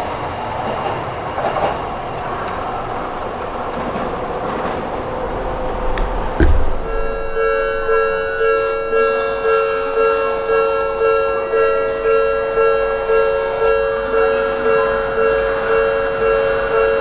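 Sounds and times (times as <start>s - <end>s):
level-crossing warning bell ringing: 6.9s - 17.0s.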